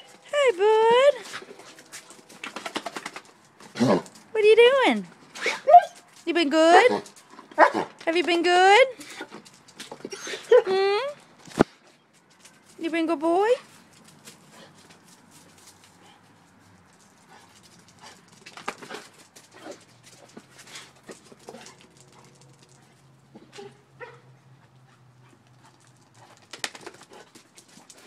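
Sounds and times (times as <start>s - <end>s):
dog clicks: 1.9s - 3.4s, 16.9s - 20.4s, 25.5s - 28.0s.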